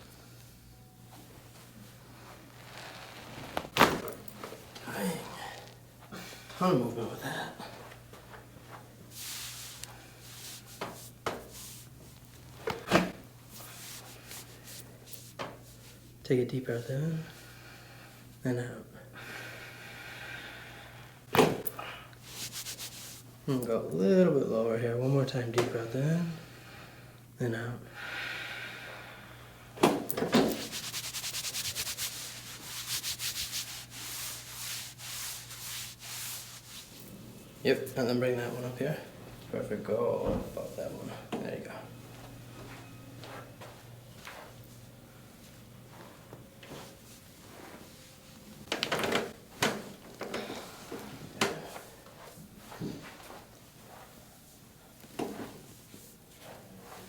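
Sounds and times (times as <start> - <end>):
faint steady hum: 0.0 - 57.0
loud crack from back: 3.0 - 4.1
hands rubbing on skin: 9.1 - 12.4, 13.5 - 16.0, 22.2 - 23.3, 30.5 - 37.1.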